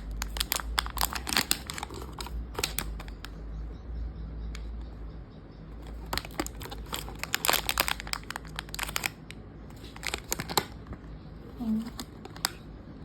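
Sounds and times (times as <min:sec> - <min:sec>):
packaging crinkling and crackling: 0:00.0 - 0:03.4, 0:05.8 - 0:12.7.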